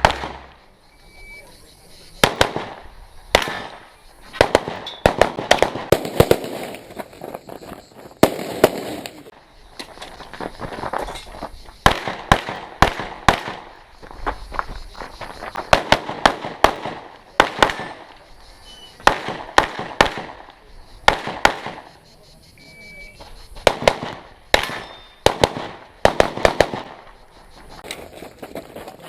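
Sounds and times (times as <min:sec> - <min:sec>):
handgun shots: 0:03.4 - 0:03.8, 0:23.7 - 0:26.9.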